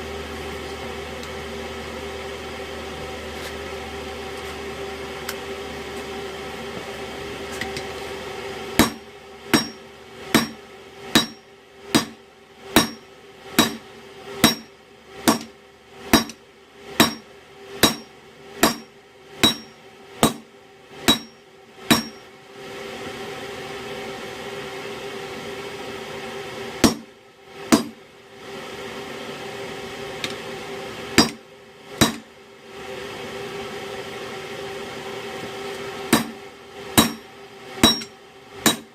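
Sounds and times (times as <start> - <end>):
steady hum: 0.0 - 38.9
hammer striking metal on anvil: 8.8 - 9.8, 10.4 - 10.6, 11.2 - 12.2, 12.8 - 13.8, 14.4 - 14.7, 15.3 - 15.5, 16.1 - 16.4, 17.0 - 20.4, 21.1 - 22.2, 26.8 - 27.1, 27.7 - 28.0, 31.2 - 31.4, 32.0 - 32.2, 36.1 - 36.4, 37.0 - 38.9.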